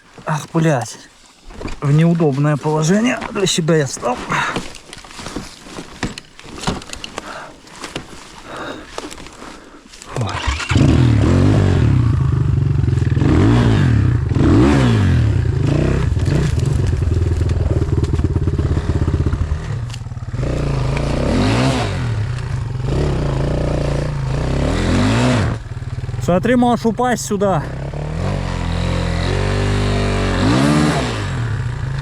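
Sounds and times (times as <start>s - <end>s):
motorcycle engine revving: 10.2s - 32.0s.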